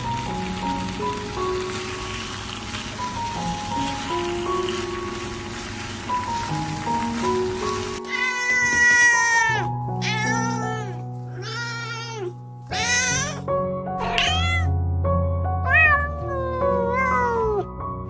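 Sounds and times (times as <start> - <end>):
background music with held notes: 0.0 - 18.0
cat meowing: 8.1 - 13.4, 14.0 - 14.8, 15.6 - 17.7.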